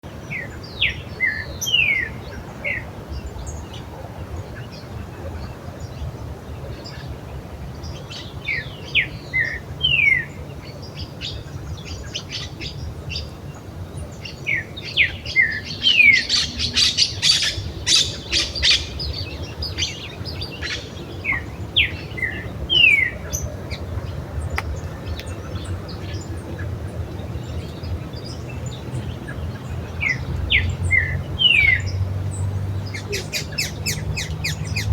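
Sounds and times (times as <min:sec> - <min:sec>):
birds chirping: 0:00.0 - 0:34.9
birds squawking: 0:15.1 - 0:27.4, 0:32.8 - 0:34.9.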